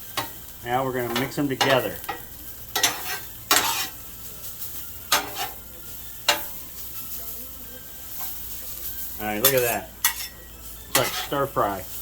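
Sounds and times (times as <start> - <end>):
vegetables sizzling on griddle: 0.0 - 12.0
spatula scraping on steel: 1.0 - 7.0, 8.1 - 11.6.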